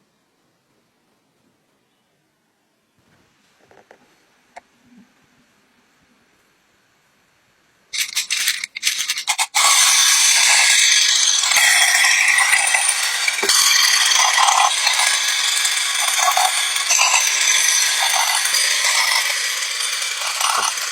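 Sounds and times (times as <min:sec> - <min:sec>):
dense rattling: 0:08.0 - 0:20.9.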